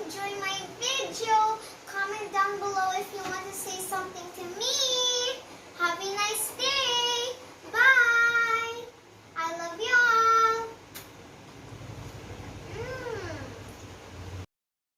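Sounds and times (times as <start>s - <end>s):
child singing: 0.0s - 10.8s.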